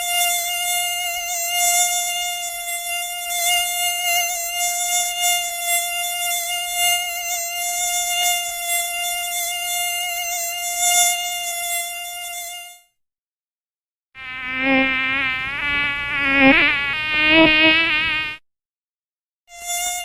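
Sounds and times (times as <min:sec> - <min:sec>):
mosquito wings whining: 0:14.2 - 0:18.4.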